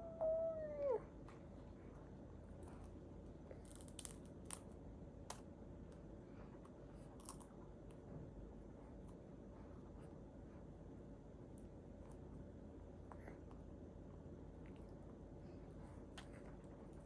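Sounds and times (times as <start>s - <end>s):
puffed rice snack crunching: 3.5s - 5.4s, 7.1s - 7.6s.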